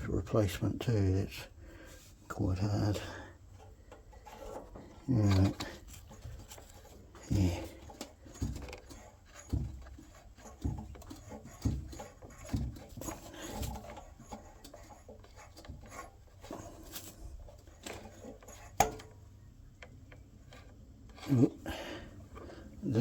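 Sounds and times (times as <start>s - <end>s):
rubbing and scraping on rubber: 1.9s - 19.1s.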